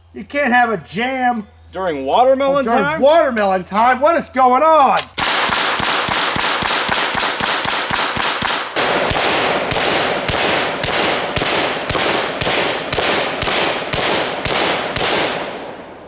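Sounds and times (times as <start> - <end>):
gunshots with ringing echo: 5.0 - 15.9.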